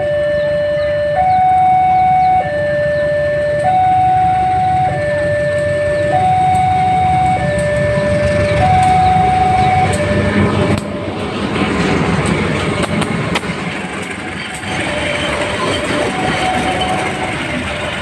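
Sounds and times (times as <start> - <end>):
two-tone crossing alarm: 0.0 - 12.4, 14.0 - 18.0
train heavy low rumble: 0.0 - 18.0
carriages rattling: 5.1 - 18.0
wheels clicking over rail joints: 5.2 - 18.0.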